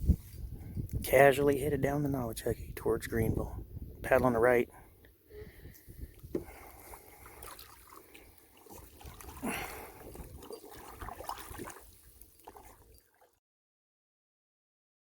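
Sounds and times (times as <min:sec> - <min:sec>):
paddle splashing in water: 0:06.3 - 0:13.4.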